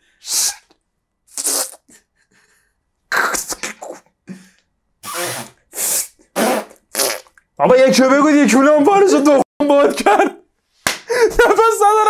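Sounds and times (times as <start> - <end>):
person making hissing mouth noises: 0.1 - 2.1, 3.1 - 7.4.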